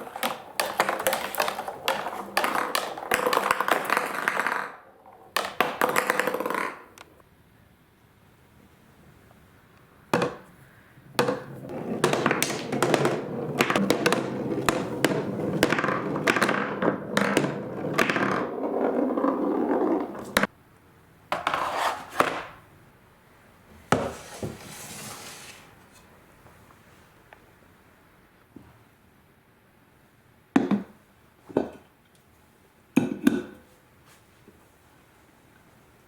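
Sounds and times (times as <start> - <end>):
marbles rolling on wooden run: 0.0 - 7.0, 11.1 - 20.5
marbles clacking: 0.0 - 7.1.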